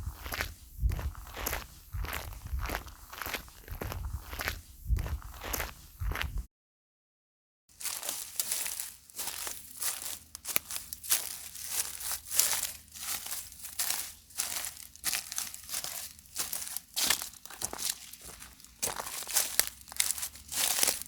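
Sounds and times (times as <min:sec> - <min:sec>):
footsteps crunching on loose surface: 0:00.0 - 0:06.5, 0:07.7 - 0:21.0.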